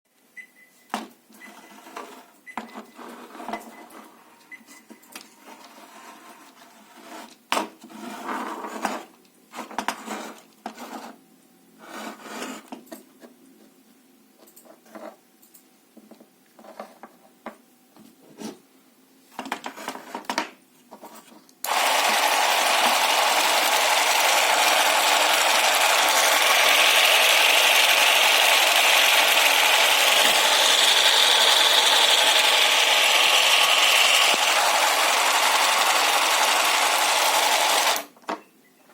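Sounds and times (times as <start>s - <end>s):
model engine mechanical rattle: 21.7s - 38.0s.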